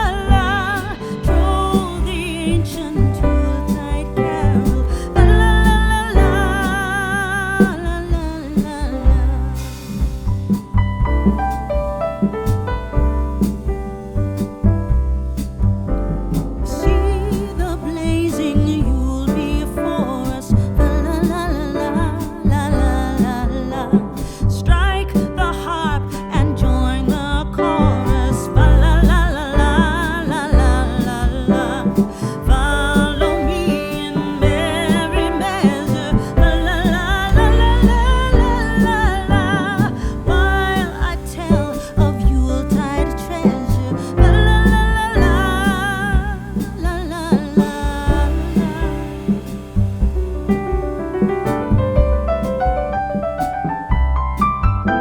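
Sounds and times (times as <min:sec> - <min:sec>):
song with singing voice: 0:00.0 - 0:10.4, 0:16.6 - 0:50.0
steady beat: 0:00.0 - 0:24.2, 0:27.5 - 0:55.0
bass and drums: 0:00.0 - 0:55.0.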